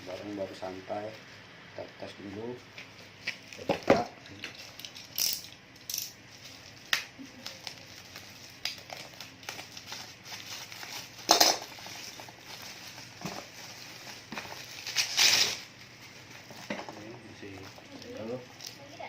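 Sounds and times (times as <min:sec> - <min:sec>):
clicks and clinks of tools: 0:04.5 - 0:06.2.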